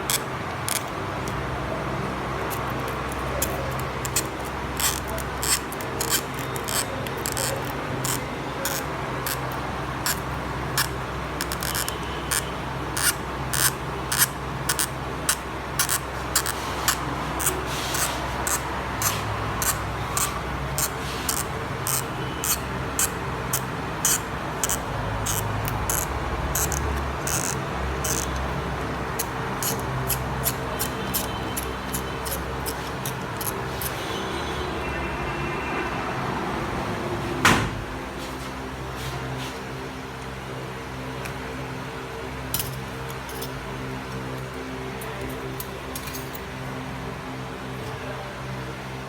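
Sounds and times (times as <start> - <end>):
adhesive strip crackling: 0.0 - 1.4, 2.4 - 34.0
steady background hum: 0.0 - 49.0.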